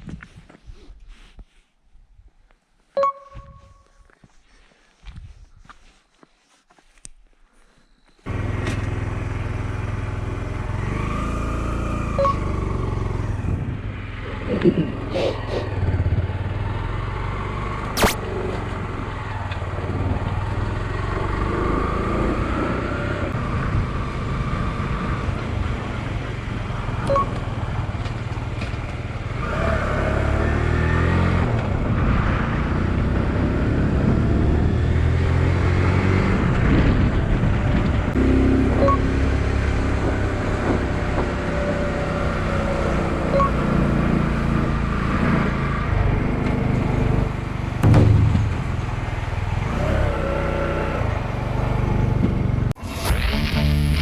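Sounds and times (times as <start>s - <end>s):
road and wind noise: 0.0s - 54.0s
motorcycle engine revving: 8.3s - 54.0s
sharp click: 18.0s - 18.2s.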